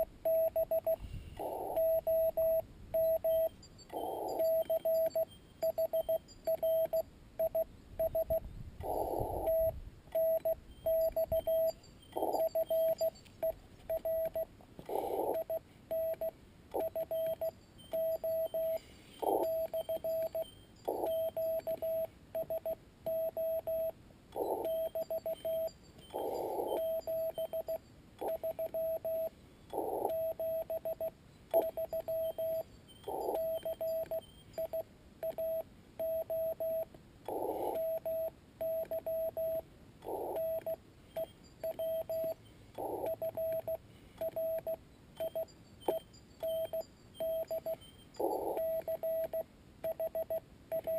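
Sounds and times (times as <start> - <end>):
morse code tone: 0.0 - 50.9
radio band hiss: 1.0 - 1.9, 14.8 - 15.4.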